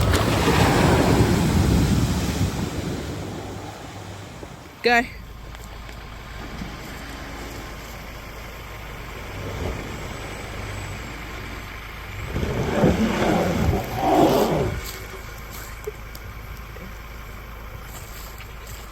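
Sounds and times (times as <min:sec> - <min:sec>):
noisy rush: 0:00.0 - 0:05.2
off-road vehicle engine: 0:00.0 - 0:18.9.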